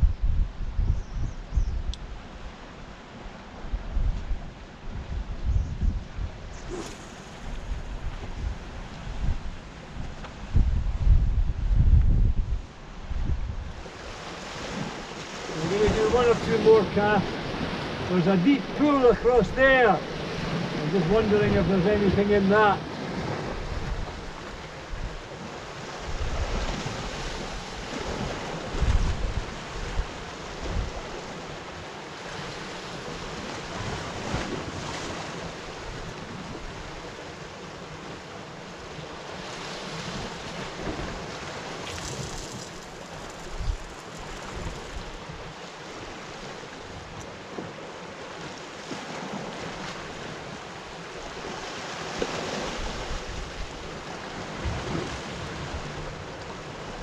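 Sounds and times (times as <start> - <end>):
wind buffeting microphone: 0.0 - 2.6, 3.6 - 31.5, 39.3 - 46.2, 52.5 - 57.0
waves crashing against rocks: 13.8 - 57.0.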